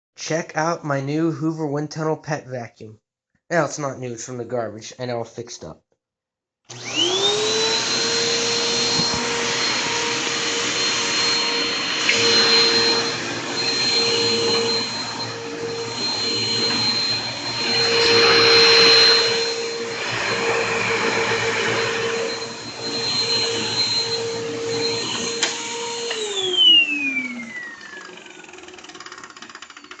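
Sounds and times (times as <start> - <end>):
vacuum cleaner motor whine: 6.7 - 30.0.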